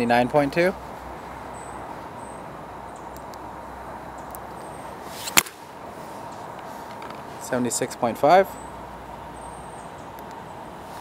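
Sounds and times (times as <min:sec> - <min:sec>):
low background hiss: 0:00.0 - 0:11.0
paintball marker shot: 0:05.2 - 0:05.7.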